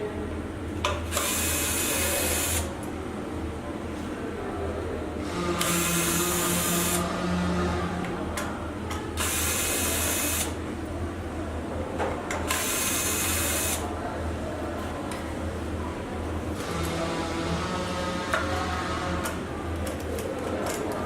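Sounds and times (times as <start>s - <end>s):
electric screwdriver whirring: 5.6s - 7.0s.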